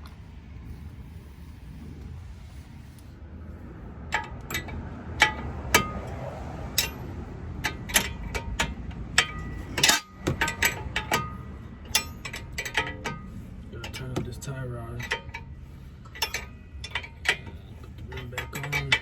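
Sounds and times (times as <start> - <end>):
metal tools clinking on steel: 4.1 - 19.0.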